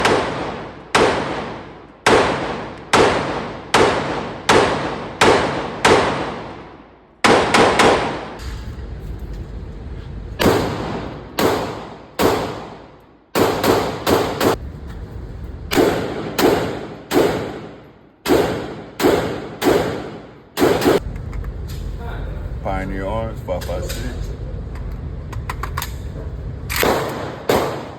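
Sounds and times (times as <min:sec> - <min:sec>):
gunshots with echoing tail: 0:00.0 - 0:08.9, 0:10.4 - 0:14.6, 0:15.6 - 0:21.2, 0:26.7 - 0:27.9.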